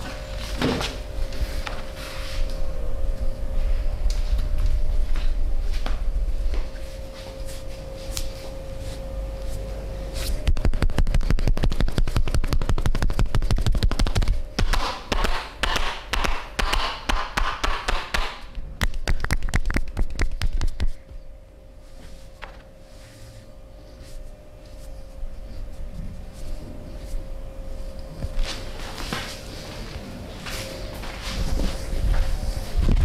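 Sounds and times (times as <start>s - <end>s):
steady low hum: 0.0s - 33.0s
hands tapping on body: 18.8s - 20.9s.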